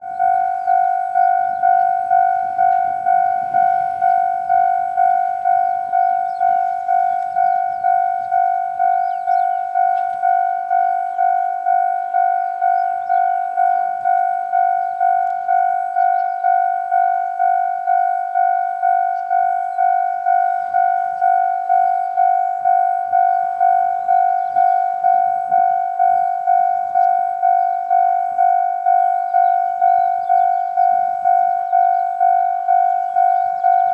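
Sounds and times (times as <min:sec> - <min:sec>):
level crossing warning bell ringing: 0:00.0 - 0:33.9.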